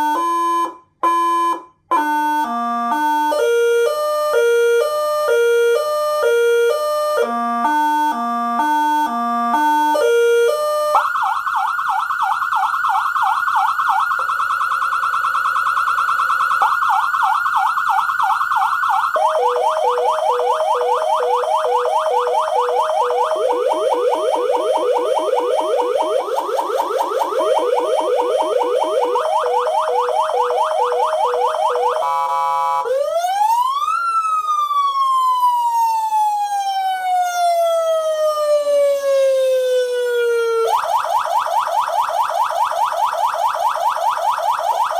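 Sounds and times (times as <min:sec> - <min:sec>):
electronic siren switching tones: 0:00.0 - 0:44.9.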